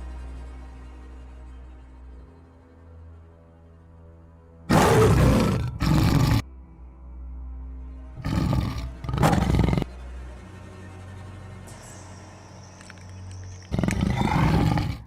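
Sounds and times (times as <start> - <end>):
low droning background music: 0.0 - 15.0
tiger roaring: 4.7 - 6.4, 8.2 - 9.9, 13.7 - 15.0.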